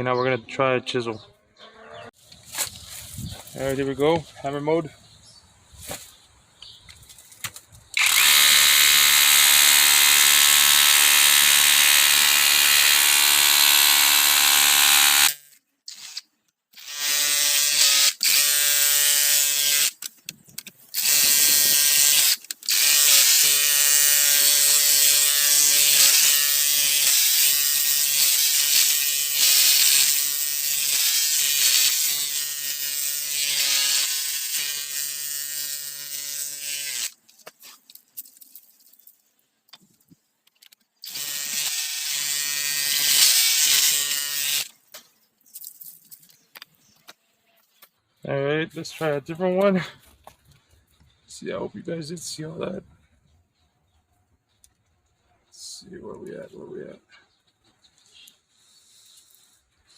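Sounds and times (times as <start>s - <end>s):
rotary hammer rattling buzz: 8.0s - 15.5s, 21.0s - 37.2s.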